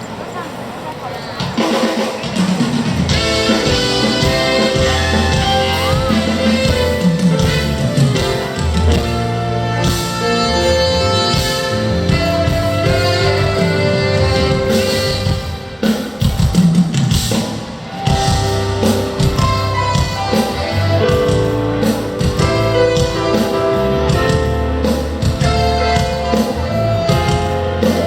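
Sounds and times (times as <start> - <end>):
live band music: 1.3 - 28.0
drum kit: 1.4 - 28.0
guitar: 1.5 - 28.0.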